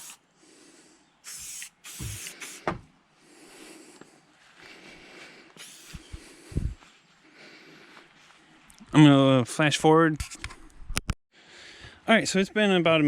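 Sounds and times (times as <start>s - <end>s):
aerosol spray hissing: 1.2s - 2.6s, 5.6s - 6.2s.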